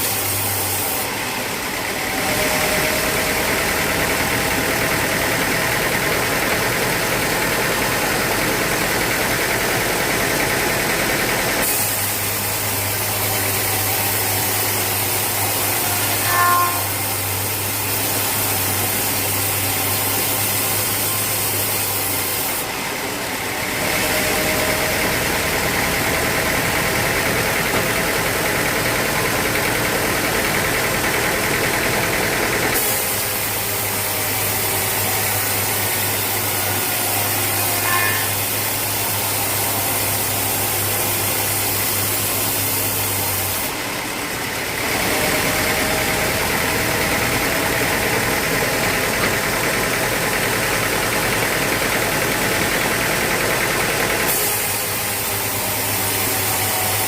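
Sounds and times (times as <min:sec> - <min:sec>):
sawmill machinery running: 0:00.0 - 0:57.0.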